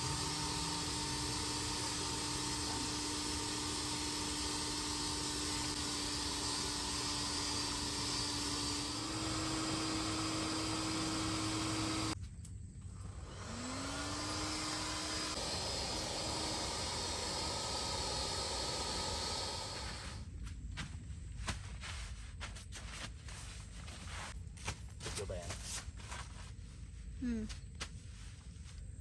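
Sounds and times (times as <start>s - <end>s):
motor humming and whining: 0.0s - 12.2s, 12.9s - 20.2s.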